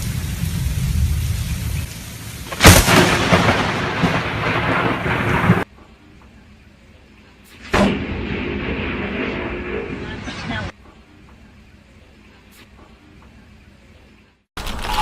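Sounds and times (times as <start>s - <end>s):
thunder crack: 0.0s - 5.7s, 7.7s - 10.8s
thunder rumbling: 0.0s - 5.7s, 7.7s - 11.7s
rain hiss: 0.0s - 7.8s.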